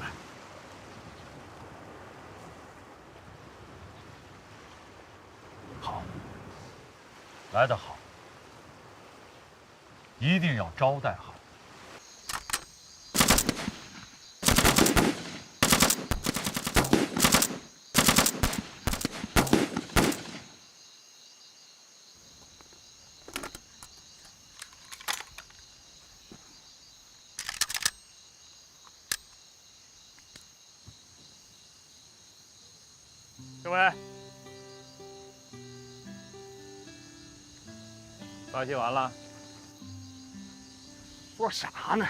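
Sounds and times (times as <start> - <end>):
automatic rifle fire: 13.2 - 13.8, 14.4 - 20.4.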